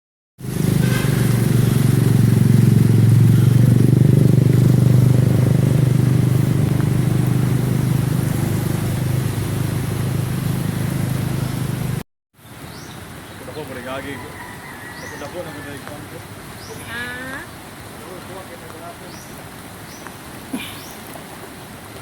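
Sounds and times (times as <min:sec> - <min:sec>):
vehicle engine droning: 0:00.4 - 0:12.0.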